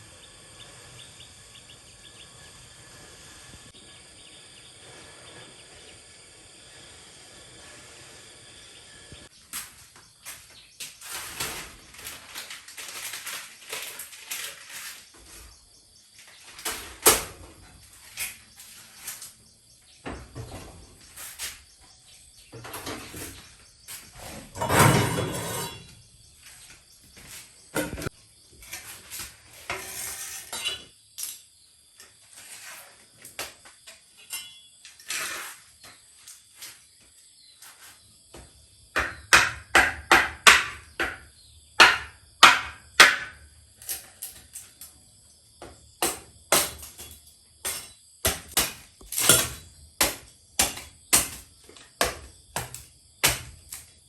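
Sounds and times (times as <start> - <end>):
scraping clatter: 24.2 - 25.9.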